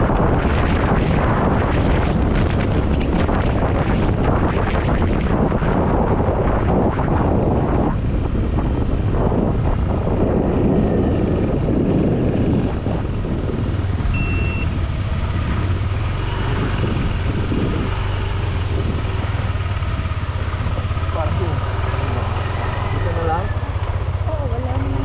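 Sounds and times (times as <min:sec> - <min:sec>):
motorcycle engine running: 0:00.0 - 0:25.0
wind buffeting on microphone: 0:00.0 - 0:25.0
high-pitched beep: 0:14.2 - 0:14.7.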